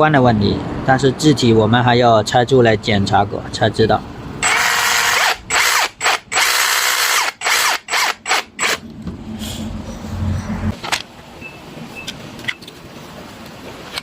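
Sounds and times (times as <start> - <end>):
power tool motor bursts: 4.4 - 8.8.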